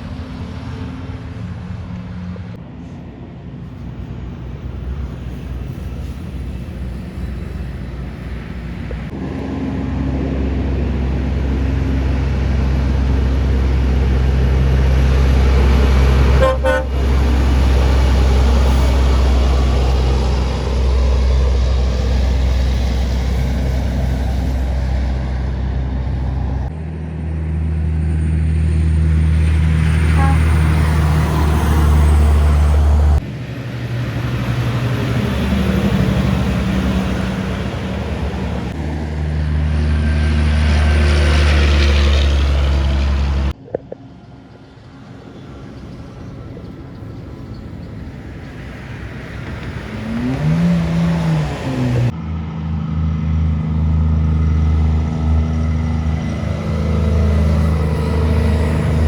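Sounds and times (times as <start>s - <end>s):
truck diesel engines passing: 0.0s - 59.0s
horn toot: 16.4s - 17.4s, 29.9s - 31.1s.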